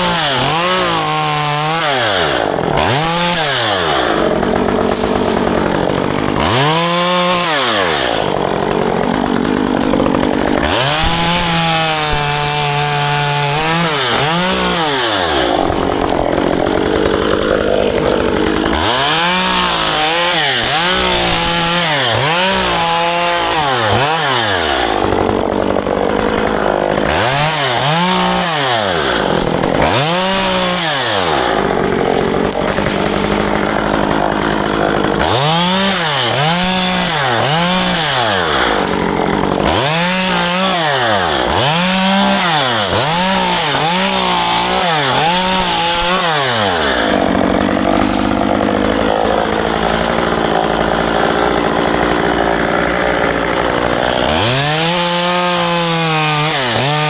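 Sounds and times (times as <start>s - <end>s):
chainsaw engine revving: 0.0s - 57.0s.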